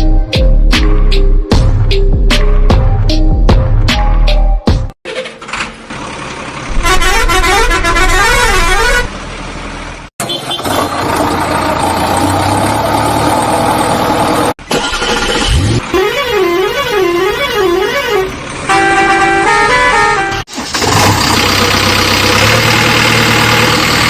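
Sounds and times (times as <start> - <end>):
engine-like noise: 5.1 - 16.0
vehicle horn: 6.7 - 9.2, 15.9 - 20.5.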